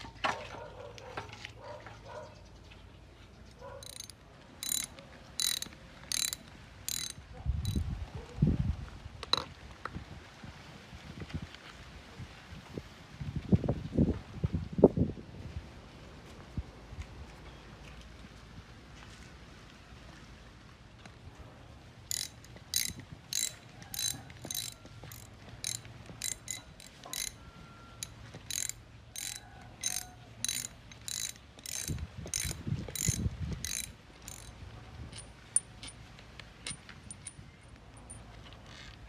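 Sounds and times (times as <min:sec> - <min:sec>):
hand tool mechanical strokes: 0:03.8 - 0:07.8, 0:22.1 - 0:27.4, 0:28.0 - 0:34.5.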